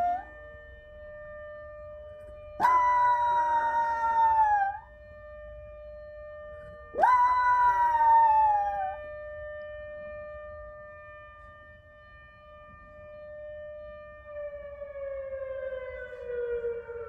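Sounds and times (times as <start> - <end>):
siren wailing: 0.0 - 17.0
dog howling: 7.0 - 9.0.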